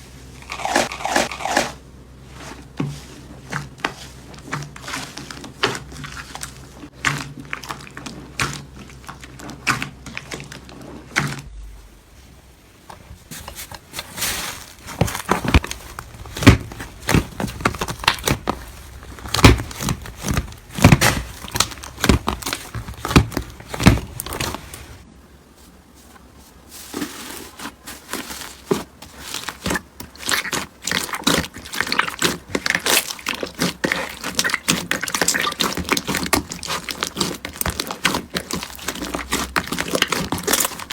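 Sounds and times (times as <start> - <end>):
crunchy slime crackling and popping: 14.2 - 25.0, 28.1 - 40.9.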